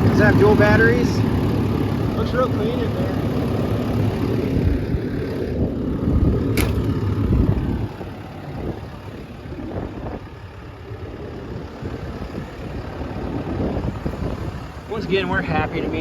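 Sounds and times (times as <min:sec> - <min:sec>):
excavator diesel engine idling: 0:00.0 - 0:16.0
sharp click: 0:06.5 - 0:07.0.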